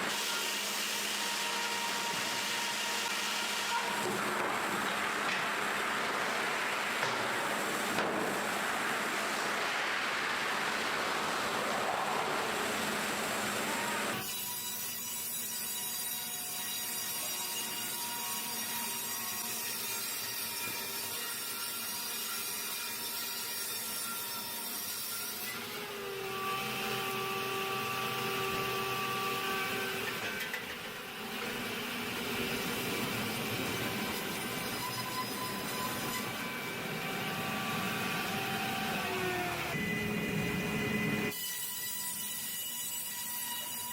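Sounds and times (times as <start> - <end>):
saw cutting through wood: 0.0 - 9.7, 10.4 - 43.9
sawmill machinery rushing: 26.0 - 41.3.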